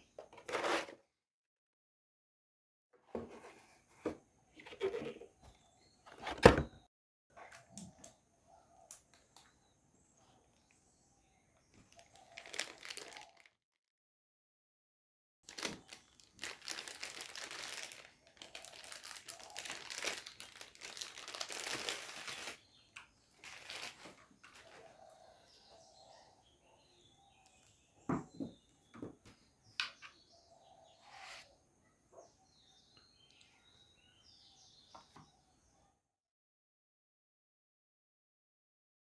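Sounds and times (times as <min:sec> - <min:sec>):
plastic packaging crinkling: 0:11.9 - 0:13.5, 0:15.5 - 0:24.8.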